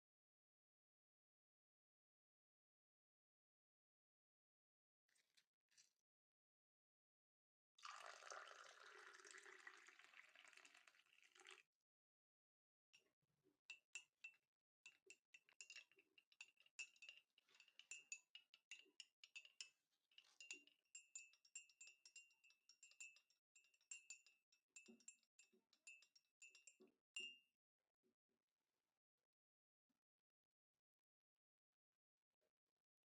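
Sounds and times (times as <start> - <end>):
spoon clinking in a glass: 13.7 - 27.4.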